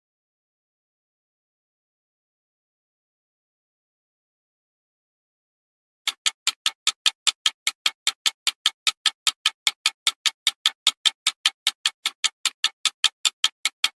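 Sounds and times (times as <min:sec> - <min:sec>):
fast clock-like ticks: 0:06.1 - 0:13.9.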